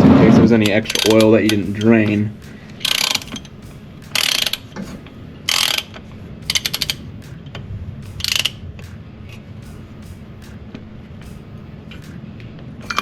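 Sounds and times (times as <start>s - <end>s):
socket ratchet clicking: 0.7s - 7.4s, 8.0s - 8.6s.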